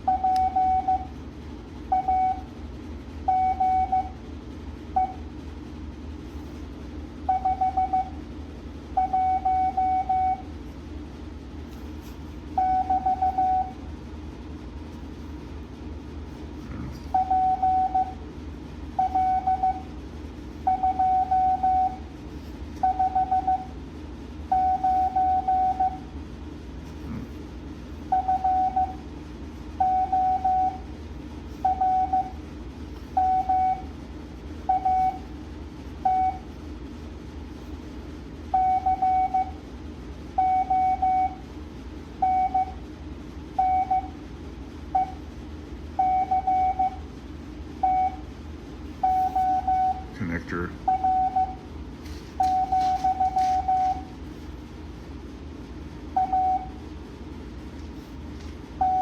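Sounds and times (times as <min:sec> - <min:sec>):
morse code beeps: 0:00.0 - 0:01.1, 0:01.9 - 0:02.5, 0:03.3 - 0:04.2, 0:04.9 - 0:05.3, 0:07.2 - 0:08.2, 0:09.0 - 0:10.5, 0:12.6 - 0:13.8, 0:17.0 - 0:18.2, 0:19.0 - 0:19.9, 0:20.6 - 0:22.1, 0:22.8 - 0:23.8, 0:24.5 - 0:26.1, 0:28.1 - 0:29.0, 0:29.8 - 0:30.9, 0:31.6 - 0:32.4, 0:33.0 - 0:34.0, 0:34.6 - 0:35.3, 0:36.0 - 0:36.6, 0:38.5 - 0:39.6, 0:40.4 - 0:41.4, 0:42.2 - 0:42.8, 0:43.6 - 0:44.2, 0:44.9 - 0:45.2, 0:46.0 - 0:47.0, 0:47.8 - 0:48.3, 0:49.0 - 0:51.6, 0:52.3 - 0:54.2, 0:56.1 - 0:56.8, 0:58.8 - 0:59.0.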